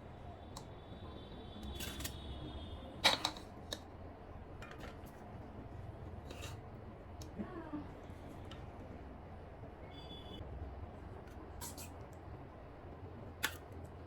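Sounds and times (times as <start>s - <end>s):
faint high whine: 9.8s - 10.4s.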